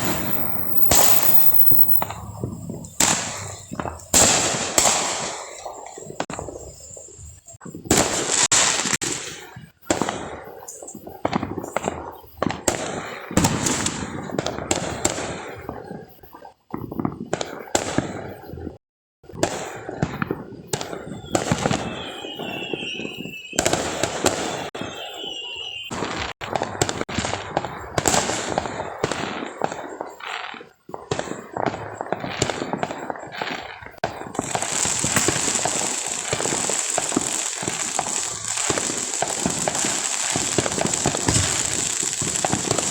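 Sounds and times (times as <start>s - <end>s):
high wavering whistle: 0.0s - 2.2s, 21.2s - 25.9s
fireworks bangs and crackles: 0.0s - 42.9s.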